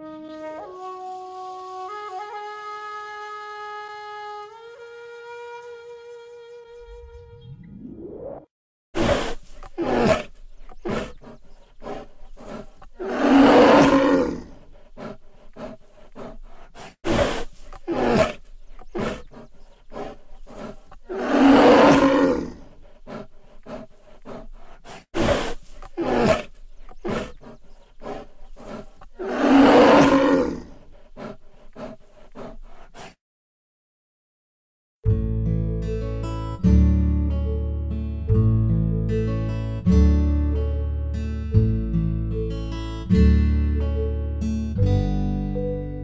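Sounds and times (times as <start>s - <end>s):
bear roaring: 9.0s - 33.1s
bear short sharp calls: 23.1s - 30.6s.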